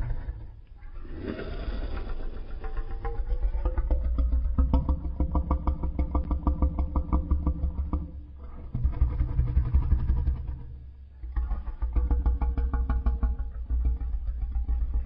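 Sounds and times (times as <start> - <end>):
pulsing low engine-like rumble: 2.4 - 12.5.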